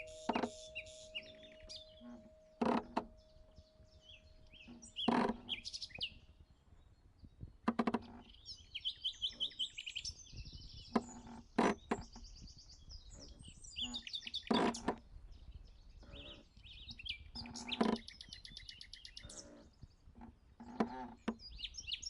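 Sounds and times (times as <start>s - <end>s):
ringing tone: 0.0s - 5.7s
small birds chirping: 0.0s - 22.0s.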